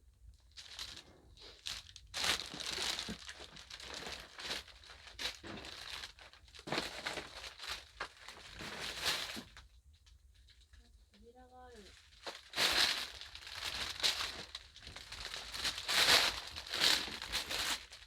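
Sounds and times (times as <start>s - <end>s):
footsteps crunching over debris: 12.0s - 18.0s.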